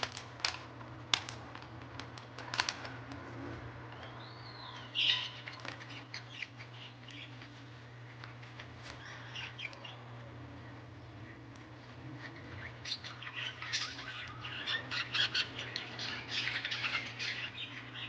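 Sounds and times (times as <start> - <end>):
steady low hum: 0.0 - 18.0
bird chirping: 4.0 - 7.4, 12.2 - 18.0.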